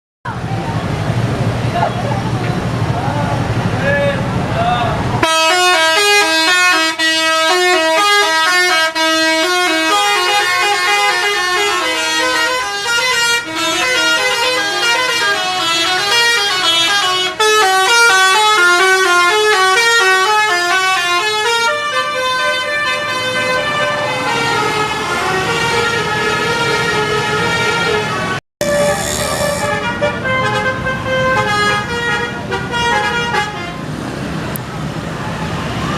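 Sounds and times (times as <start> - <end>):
bus multi-tone horn melody: 5.2 - 34.0.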